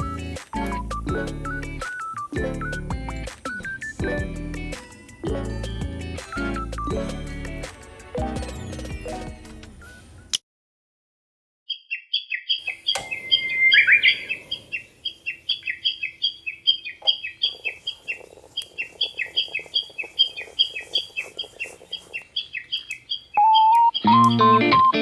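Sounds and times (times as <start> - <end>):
guitar music: 0.0 - 3.4, 4.0 - 9.4, 24.0 - 25.0
downward-swept bird call: 11.7 - 17.5
bird chirping: 11.7 - 25.0.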